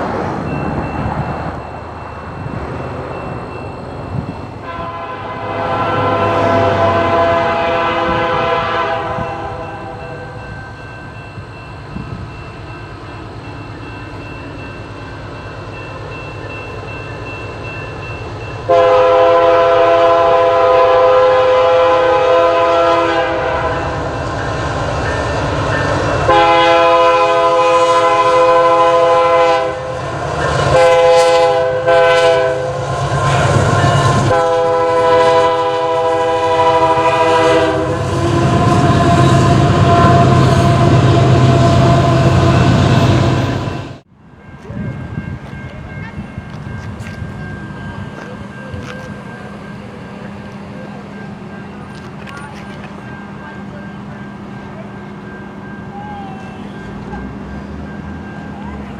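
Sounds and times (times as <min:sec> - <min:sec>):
passing train rumble: 0:00.0 - 0:58.9
locomotive air horn chord: 0:04.6 - 0:10.4, 0:18.7 - 0:24.2, 0:26.2 - 0:30.0, 0:30.7 - 0:44.0.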